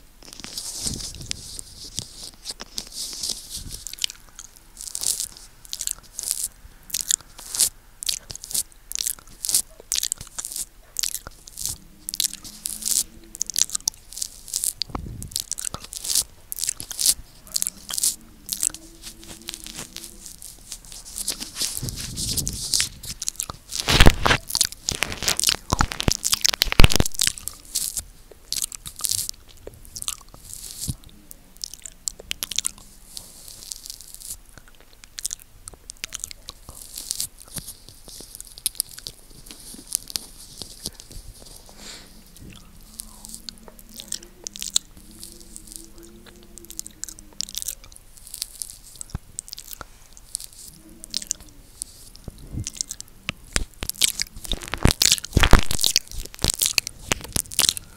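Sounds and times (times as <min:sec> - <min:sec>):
wet mouth sounds: 0:00.0 - 0:57.9
lip smacking: 0:00.2 - 0:57.9
mouth thumping on microphone: 0:14.8 - 0:27.5.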